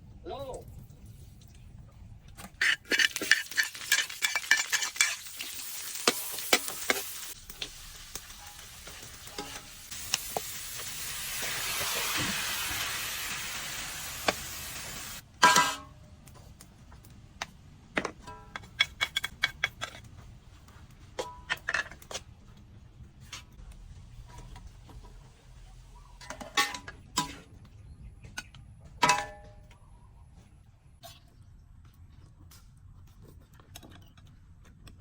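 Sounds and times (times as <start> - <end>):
utensil scraping a pan: 2.6 - 7.4
meat sizzling in a pan: 2.9 - 15.2.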